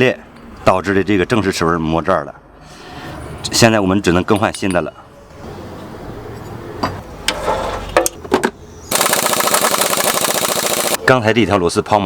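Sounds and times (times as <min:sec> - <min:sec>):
impact wrench hammering: 0:08.9 - 0:11.0.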